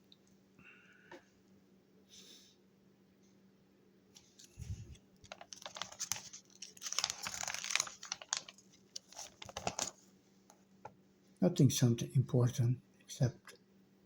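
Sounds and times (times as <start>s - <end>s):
packaging rustling and crinkling: 4.2s - 10.1s.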